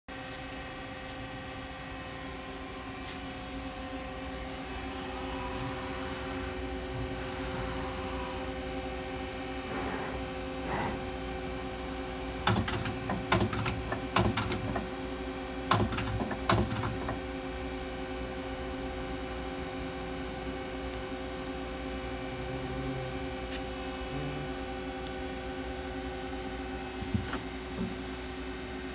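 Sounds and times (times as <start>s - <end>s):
lathe humming: 1.6s - 12.5s.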